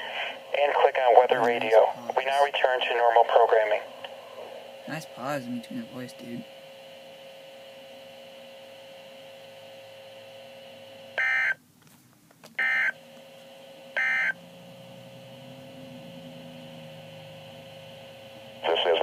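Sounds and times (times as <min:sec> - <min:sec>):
faint hum and hiss: 0:00.0 - 0:19.0.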